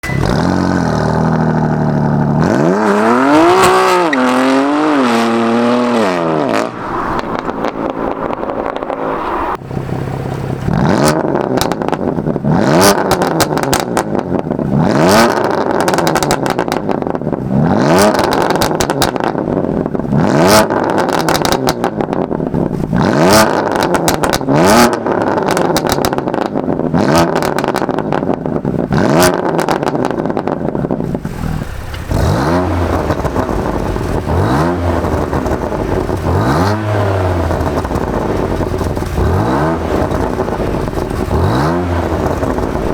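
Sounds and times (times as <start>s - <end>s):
car engine revving: 0.0s - 42.9s
exhaust cracks and pops: 10.2s - 17.4s, 18.0s - 42.9s.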